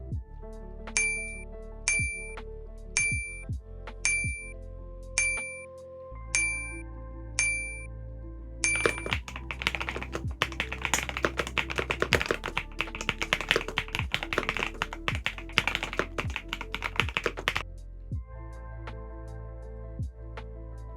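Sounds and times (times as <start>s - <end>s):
mechanical keyboard typing: 8.6s - 17.6s.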